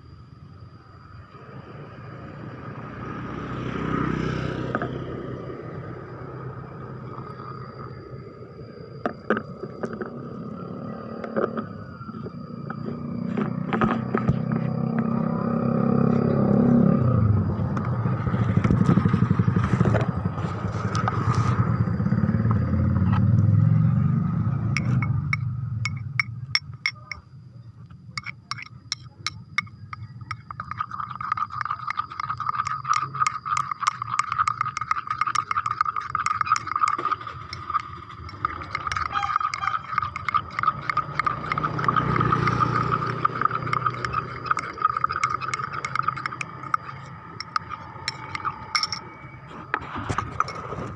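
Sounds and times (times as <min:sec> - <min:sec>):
motor vehicle passing: 0:01.6 - 0:08.8, 0:09.7 - 0:26.8, 0:30.0 - 0:50.9
steady high tone: 0:20.0 - 0:27.3, 0:28.2 - 0:49.5
rapid clicking: 0:28.2 - 0:49.0
light scraping: 0:28.2 - 0:50.9.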